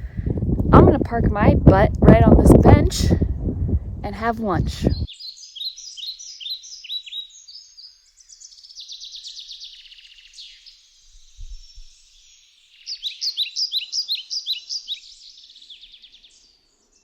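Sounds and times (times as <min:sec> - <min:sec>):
songbird chirping and trilling: 0:04.2 - 0:17.0.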